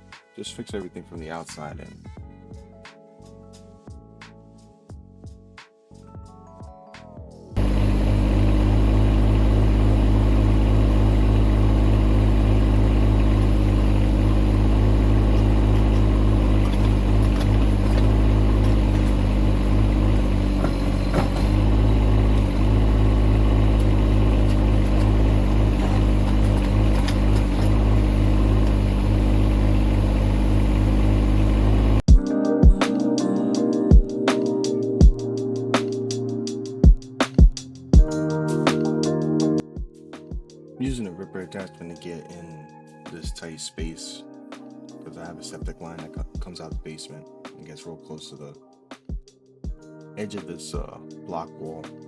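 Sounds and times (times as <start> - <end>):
digging machine engine running: 7.6 - 32.1.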